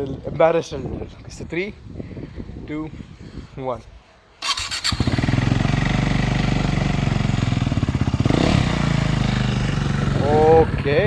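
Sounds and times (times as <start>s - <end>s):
electric starter cranking: 4.4s - 5.7s
motorcycle engine pulsing idle: 4.4s - 11.0s.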